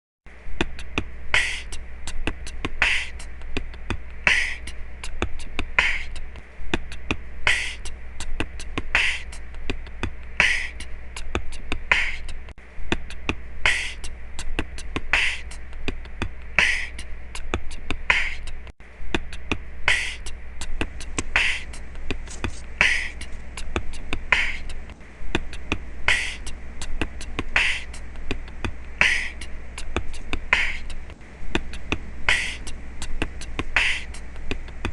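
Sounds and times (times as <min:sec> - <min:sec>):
music with steady beat: 0:00.4 - 0:34.9.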